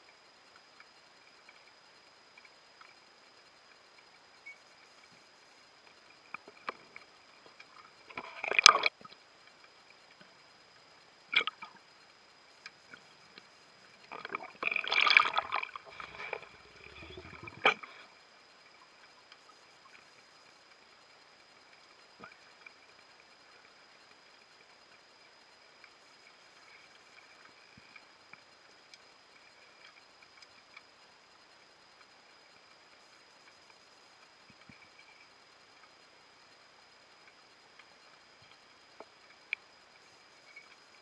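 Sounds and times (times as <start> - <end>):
underwater gurgling and bubbling: 14.0 - 18.2.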